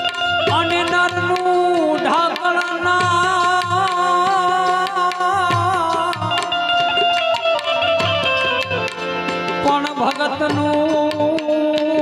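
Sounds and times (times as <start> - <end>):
tabla drum beats: 0.0 - 12.0
wavering held melody line: 6.2 - 9.7.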